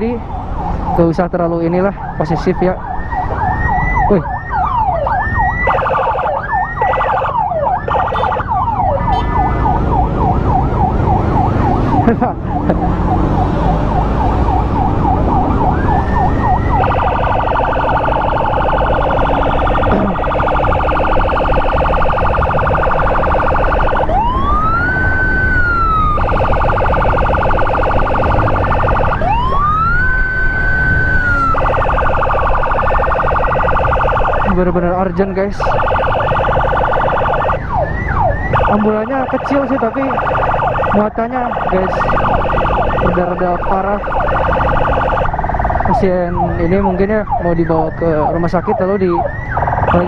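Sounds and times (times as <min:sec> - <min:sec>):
electronic emergency sirens: 0:00.0 - 0:50.0.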